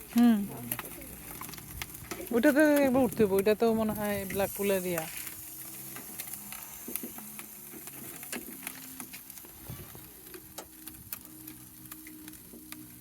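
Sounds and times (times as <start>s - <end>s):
food sizzling on a grill: 0.0s - 13.0s.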